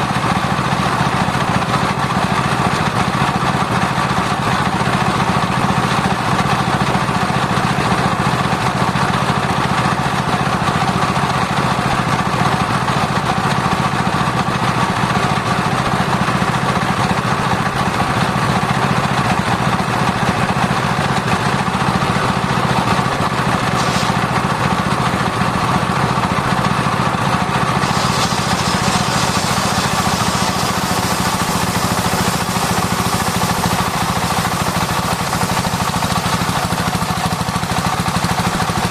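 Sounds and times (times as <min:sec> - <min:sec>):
circular saw humming: 0:27.6 - 0:36.2
high hiss: 0:27.8 - 0:34.3.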